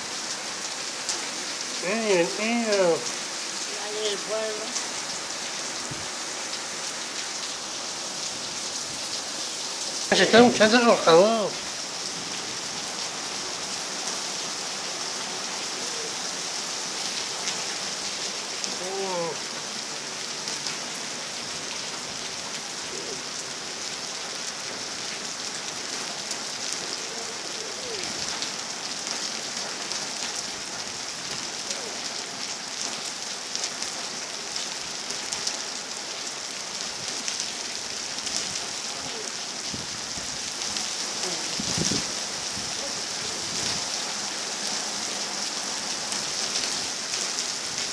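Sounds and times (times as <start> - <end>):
steady rain falling: 0.0 - 47.9
faint voice-like sounds: 3.6 - 4.8, 18.7 - 19.4, 26.9 - 28.1, 31.7 - 32.0, 38.9 - 39.4, 41.2 - 41.6, 42.7 - 43.5.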